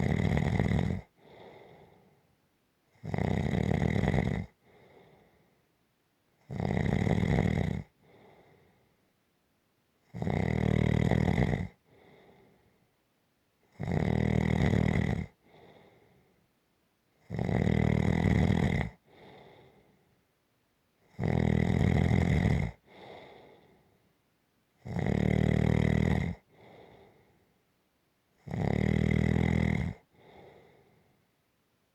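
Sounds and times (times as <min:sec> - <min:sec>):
person snoring: 0:00.0 - 0:02.0, 0:03.0 - 0:05.2, 0:06.5 - 0:08.4, 0:10.1 - 0:12.2, 0:13.8 - 0:15.9, 0:17.3 - 0:19.6, 0:21.2 - 0:23.6, 0:24.8 - 0:27.2, 0:28.4 - 0:30.8
soft breath: 0:01.1 - 0:02.4, 0:04.6 - 0:05.7, 0:08.0 - 0:09.1, 0:11.8 - 0:13.0, 0:15.4 - 0:16.5, 0:19.0 - 0:20.3, 0:22.8 - 0:24.2, 0:26.4 - 0:27.6, 0:30.0 - 0:31.4.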